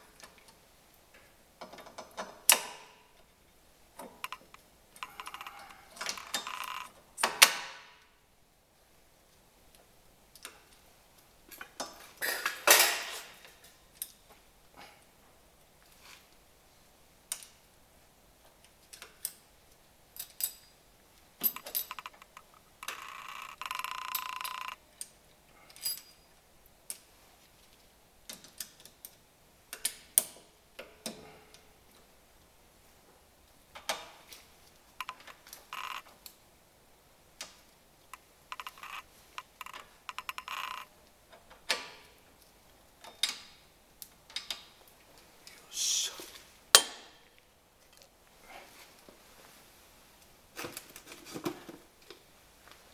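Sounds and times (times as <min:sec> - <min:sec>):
metal parts clicking and clinking: 0:04.0 - 0:07.5, 0:20.2 - 0:20.7, 0:21.4 - 0:25.1, 0:25.7 - 0:26.2.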